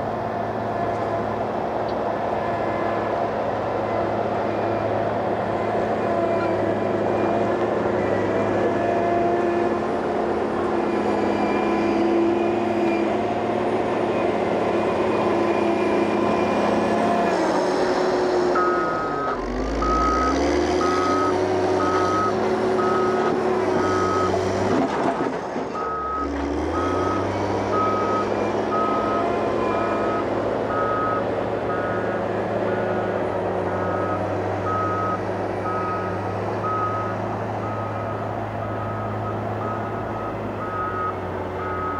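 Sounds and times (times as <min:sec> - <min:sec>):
diesel construction machine engine: 0:00.0 - 0:41.9
reversing alarm beeping: 0:15.0 - 0:24.4, 0:25.8 - 0:41.9.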